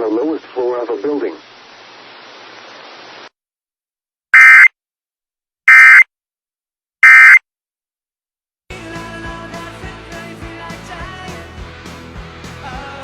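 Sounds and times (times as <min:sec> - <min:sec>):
harsh digital data tones: 0:04.4 - 0:04.7, 0:05.7 - 0:06.0, 0:07.0 - 0:07.4
music: 0:08.7 - 0:13.0.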